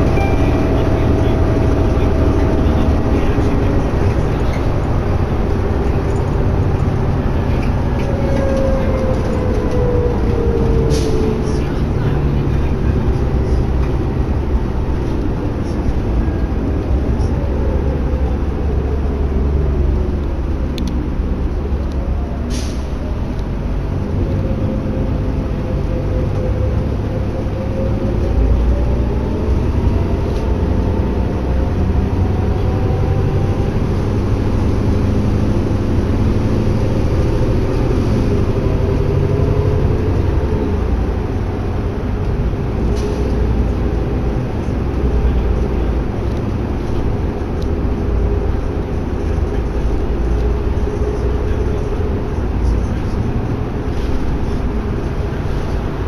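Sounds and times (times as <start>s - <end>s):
drivetrain whine changing pitch: 0.0s - 13.5s
bus drivetrain and road rumble: 0.0s - 56.0s.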